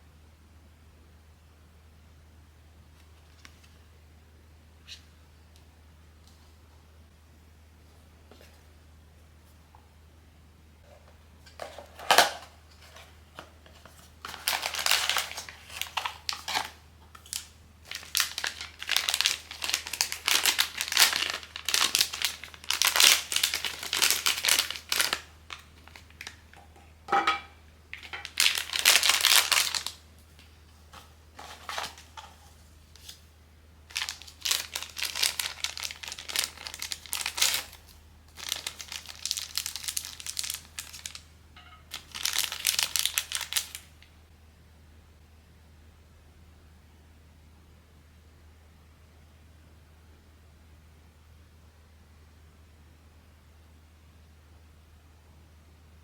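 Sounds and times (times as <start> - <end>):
packaging crinkling and tearing: 11.6 - 26.5, 27.9 - 30.0, 31.0 - 32.4, 33.9 - 41.3, 41.9 - 44.1.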